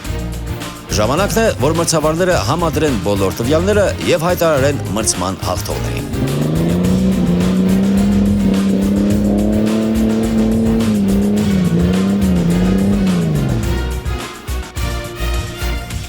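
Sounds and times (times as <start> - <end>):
background music: 0.0 - 16.0
car engine at high revs: 4.8 - 14.1.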